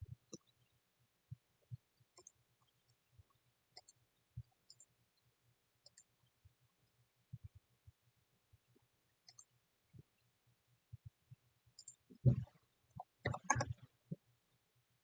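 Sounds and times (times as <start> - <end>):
computer mouse clicks: 2.1 - 3.0, 3.7 - 4.0, 4.7 - 4.9, 5.8 - 6.1, 9.2 - 9.5, 11.8 - 12.4, 13.0 - 13.9
soft low thumps: 12.1 - 12.6.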